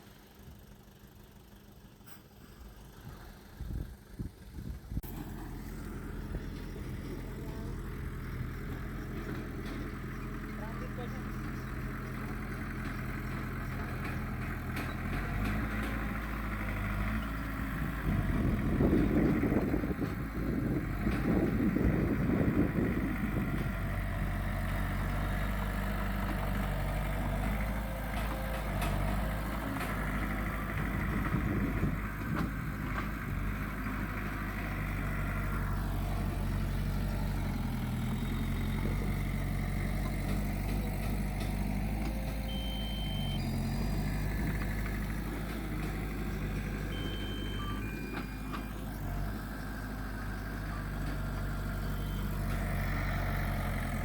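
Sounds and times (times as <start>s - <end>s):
heavy diesel machinery engine drone: 0.0s - 54.0s
short high tones: 42.5s - 43.5s.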